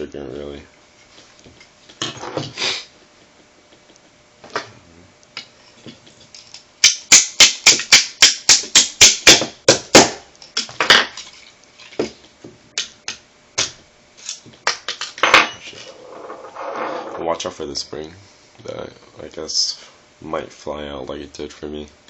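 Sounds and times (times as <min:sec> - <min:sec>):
hammer tapping a punch: 0:06.8 - 0:10.2.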